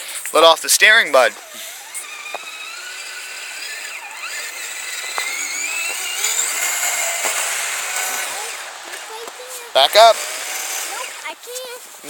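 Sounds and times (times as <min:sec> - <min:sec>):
electric motor whining: 0:00.8 - 0:11.6
small clicks: 0:03.5 - 0:08.0.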